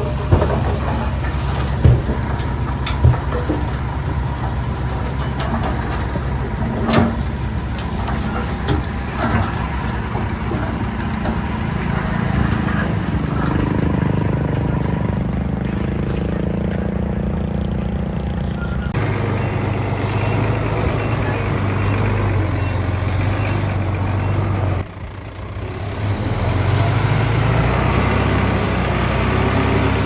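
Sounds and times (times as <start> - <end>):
metallic clanks: 0.0 - 23.8
diesel engines running: 0.0 - 30.0.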